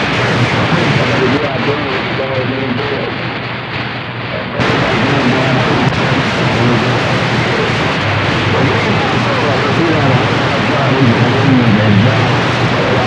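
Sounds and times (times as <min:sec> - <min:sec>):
faint garbled radio voices: 0:00.0 - 0:13.0
radio static hiss: 0:00.0 - 0:13.0.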